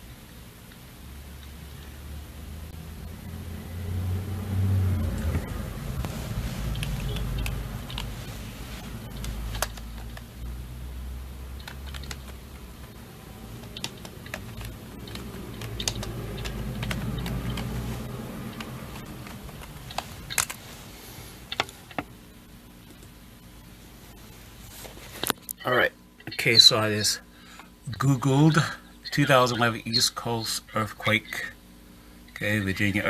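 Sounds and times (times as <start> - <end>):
computer keyboard typing: 6.6 - 8.2, 9.0 - 10.4, 11.5 - 20.6.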